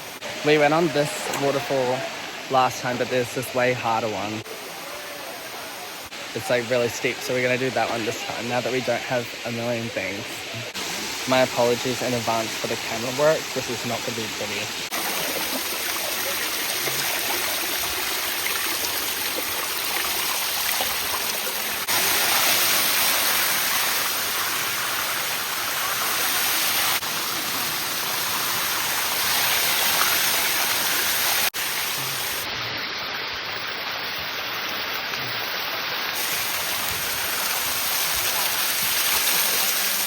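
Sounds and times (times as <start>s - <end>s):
waterfall rushing over rock: 9.3s - 32.6s, 35.7s - 40.0s.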